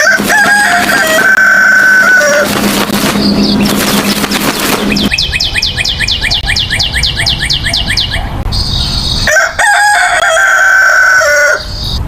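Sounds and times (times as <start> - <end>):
rooster crowing: 0.0 - 2.5, 9.2 - 11.8
fast bird chirps: 2.2 - 9.3.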